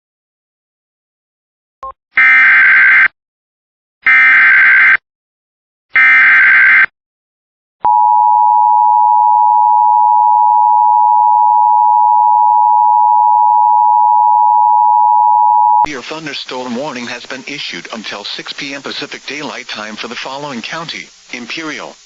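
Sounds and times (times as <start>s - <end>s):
steady alarm tone: 7.9s - 16.2s.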